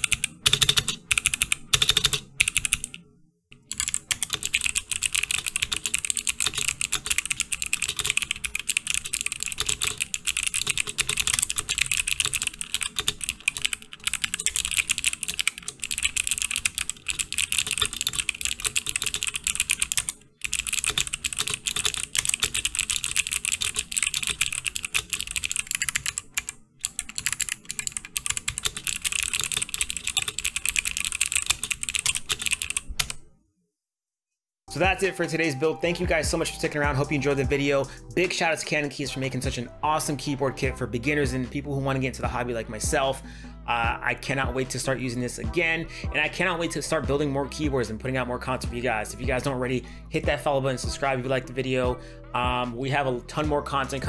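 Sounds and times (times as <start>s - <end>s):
fast clicky keyboard typing: 0.0s - 3.0s, 3.6s - 33.2s.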